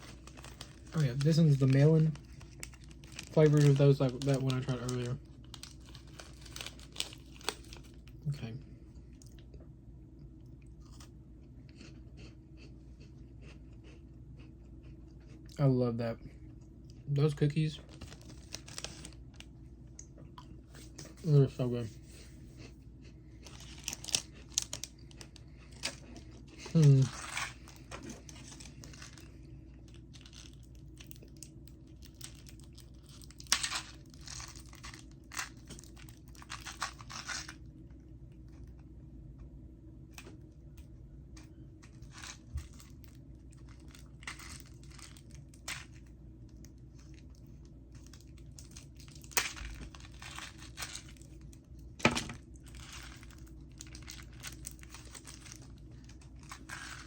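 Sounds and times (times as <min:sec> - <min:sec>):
snack packaging crinkling and tearing: 0:00.0 - 0:09.5, 0:17.2 - 0:19.6, 0:23.3 - 0:38.9, 0:41.4 - 0:57.0.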